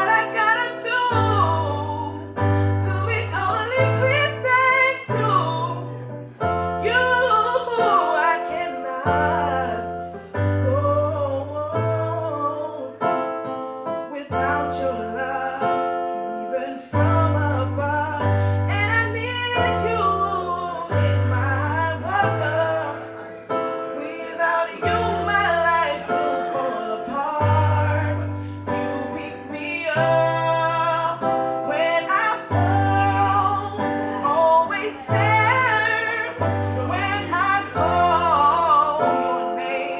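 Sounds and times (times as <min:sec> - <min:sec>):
woman singing: 0:00.0 - 0:13.1, 0:14.0 - 0:23.1, 0:23.8 - 0:39.9
keyboard chords: 0:00.0 - 0:39.9
bass line: 0:32.5 - 0:39.2.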